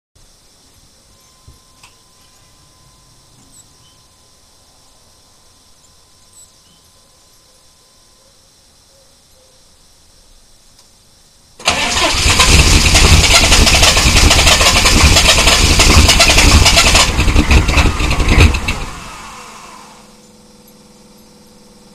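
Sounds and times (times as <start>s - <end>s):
faint steady tone: 0.2s - 11.6s, 19.3s - 21.9s
diesel engine starting and running: 11.6s - 20.4s.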